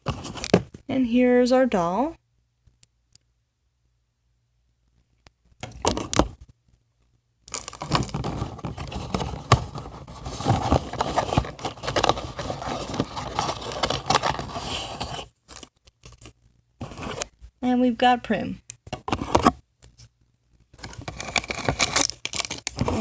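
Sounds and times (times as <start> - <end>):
plastic packaging crinkling and tearing: 7.5 - 17.3, 20.6 - 23.0.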